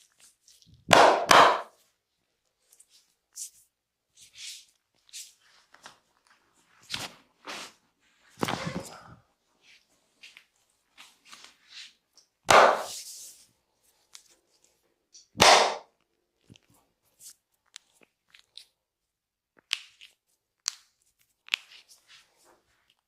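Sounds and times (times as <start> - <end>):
open-hand slaps on body: 0.9 - 1.7, 12.5 - 12.9, 15.4 - 15.8.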